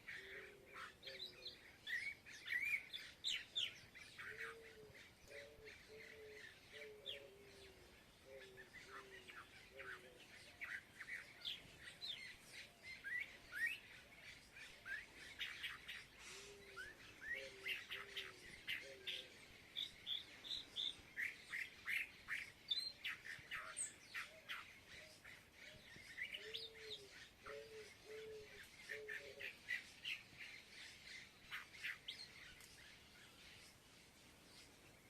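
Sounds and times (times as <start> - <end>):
birds chirping: 0.0 - 35.0.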